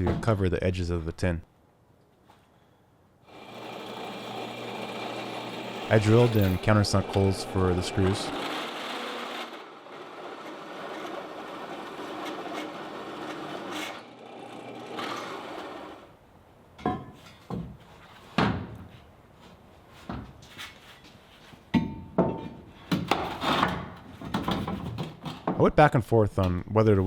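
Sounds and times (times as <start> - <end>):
drill grinding into steel: 3.3 - 16.1.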